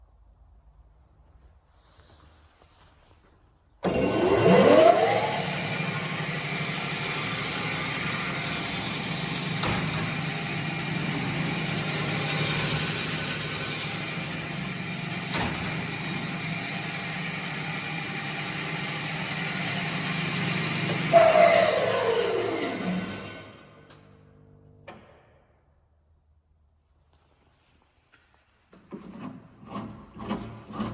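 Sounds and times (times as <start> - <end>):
bandsaw motor running: 3.8 - 23.8.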